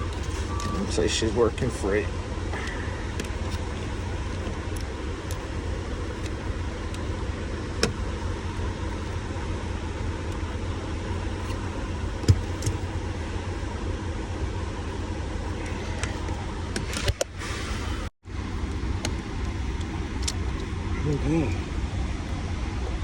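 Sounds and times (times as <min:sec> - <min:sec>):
vehicle engines idling: 0:00.0 - 0:23.0
turn signal switch clicks: 0:12.2 - 0:12.8, 0:19.0 - 0:20.7.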